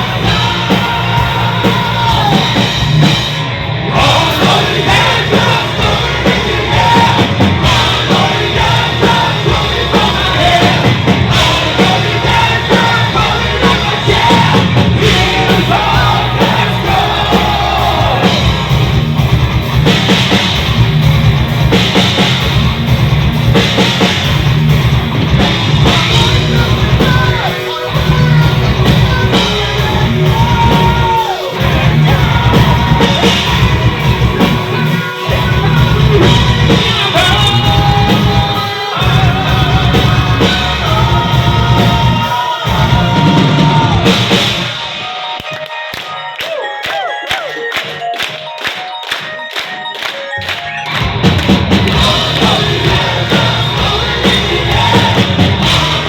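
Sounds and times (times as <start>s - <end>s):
singer holding long notes: 0.0s - 19.0s, 25.8s - 45.1s, 51.8s - 56.0s
drums: 0.0s - 56.0s
heavy metal band playing live: 0.0s - 56.0s.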